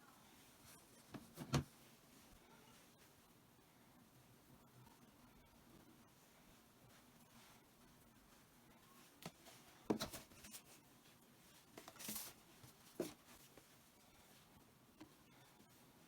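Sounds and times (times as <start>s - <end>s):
fabric rustling: 6.2s - 16.0s.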